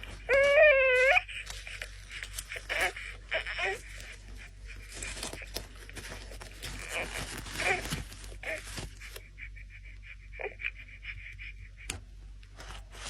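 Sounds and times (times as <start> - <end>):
rustling handling noise: 0.0 - 9.5, 12.4 - 13.0.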